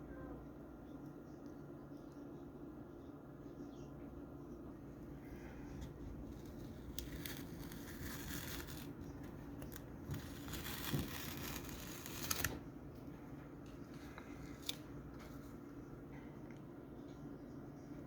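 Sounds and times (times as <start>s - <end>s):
hand scraping and crinkling: 5.2s - 15.6s.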